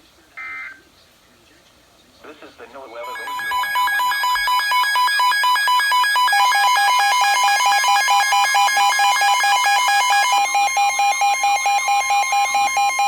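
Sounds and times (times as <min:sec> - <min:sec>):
weather radio alarm beeping: 0:03.0 - 0:13.0.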